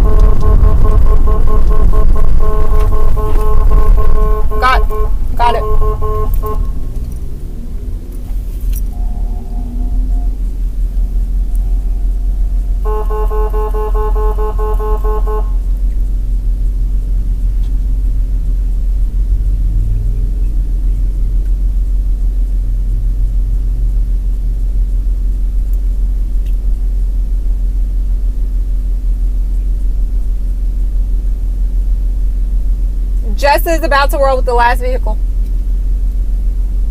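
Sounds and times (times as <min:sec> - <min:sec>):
vehicle horn: 0:00.0 - 0:07.2, 0:08.8 - 0:15.8
vehicle rumble: 0:00.0 - 0:36.9.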